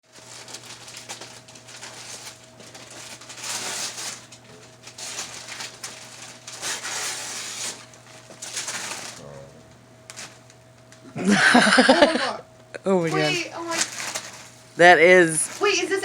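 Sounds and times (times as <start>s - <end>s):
wrapping paper rustling and tearing: 0.0s - 9.4s, 10.1s - 10.6s, 13.0s - 16.0s.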